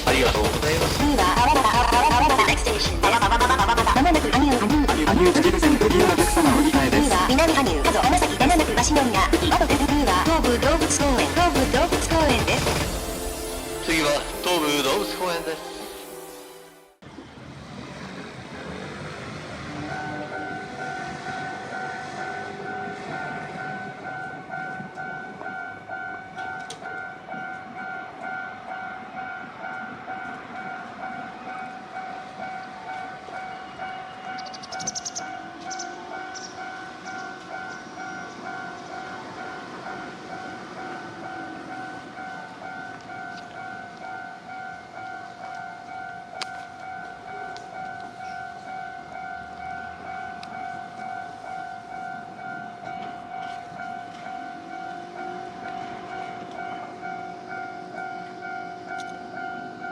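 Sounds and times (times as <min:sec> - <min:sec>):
train passing: 0:00.0 - 0:59.9
high squealing of train wheels: 0:19.5 - 0:59.9
level crossing warning bell ringing: 0:19.7 - 0:59.9.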